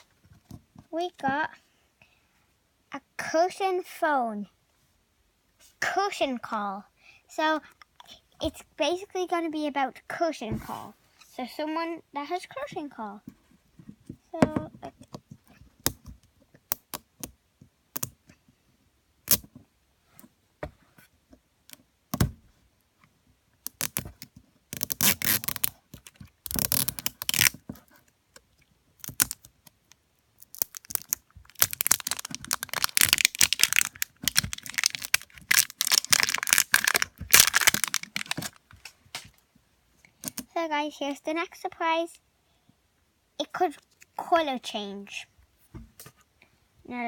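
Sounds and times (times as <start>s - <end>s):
small clicks and crackles: 23.6s - 39.4s
toy wrapping crinkling and tearing: 23.7s - 24.1s, 24.7s - 27.6s, 29.0s - 38.9s.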